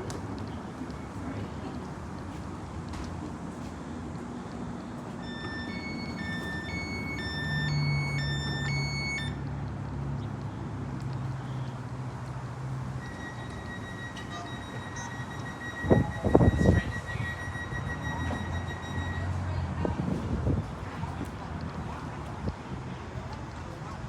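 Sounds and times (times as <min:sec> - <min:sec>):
steady high tone: 0:05.2 - 0:09.5, 0:13.0 - 0:19.6
two-tone electronic warning beeps: 0:05.2 - 0:09.5, 0:13.0 - 0:19.6.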